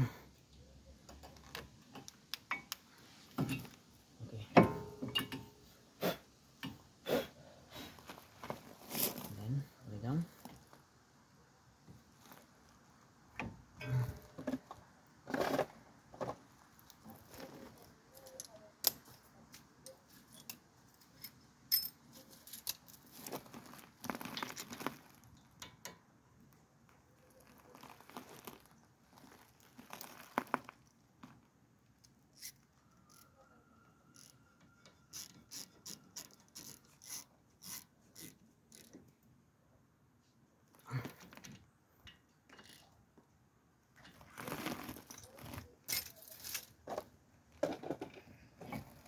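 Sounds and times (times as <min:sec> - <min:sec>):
metal clicks and scrapes of tools: 0:16.8 - 0:26.0, 0:32.0 - 0:33.4, 0:34.1 - 0:39.2, 0:41.2 - 0:43.0, 0:44.0 - 0:49.0.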